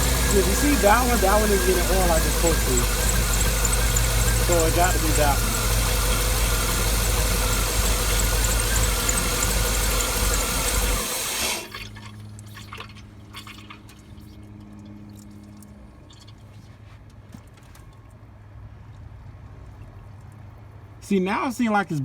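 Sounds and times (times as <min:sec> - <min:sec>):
low hum: 0:00.0 - 0:11.0
car engine running: 0:00.0 - 0:11.7.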